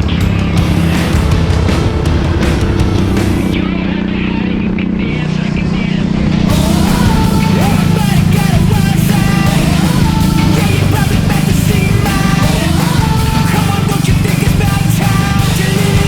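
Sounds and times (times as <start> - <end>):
loud rock music: 0.0 - 16.0
person singing: 6.5 - 16.0.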